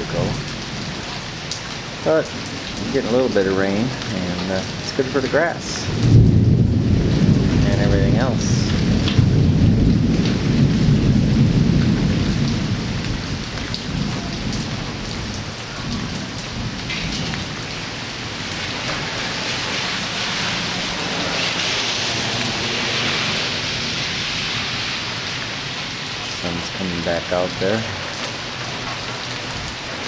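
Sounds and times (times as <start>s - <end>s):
steady rainfall: 0.0s - 30.0s
thunder rumbling: 2.3s - 29.9s.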